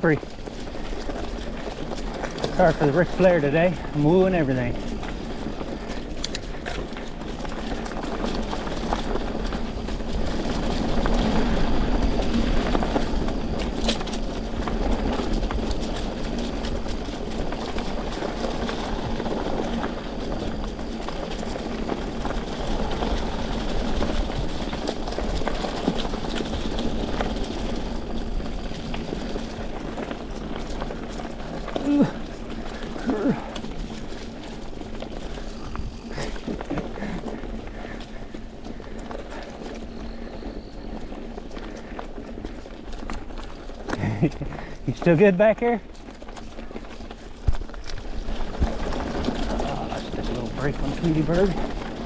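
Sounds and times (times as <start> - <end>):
bike tyres rolling on dirt: 0.0 - 52.0
bike clicks and knocks: 0.1 - 39.9.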